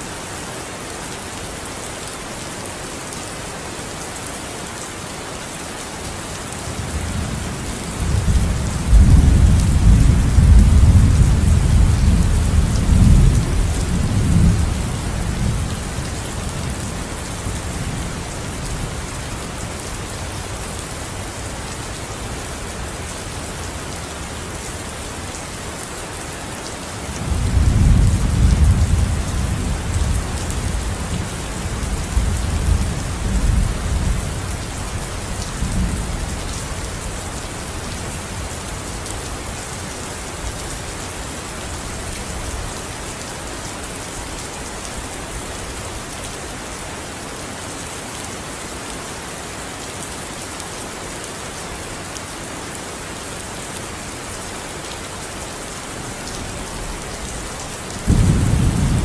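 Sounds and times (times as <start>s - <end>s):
steady rain falling: 0.0s - 59.0s
thunder rolling: 58.0s - 59.0s.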